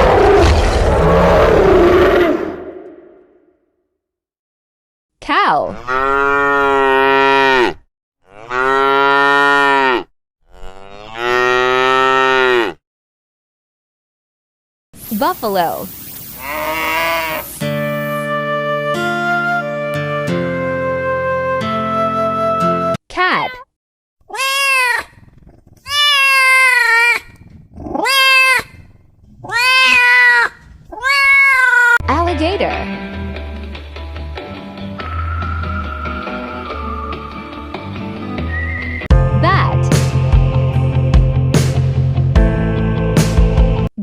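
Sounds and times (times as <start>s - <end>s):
cow mooing: 5.8s - 12.8s
cat meowing: 24.3s - 32.0s.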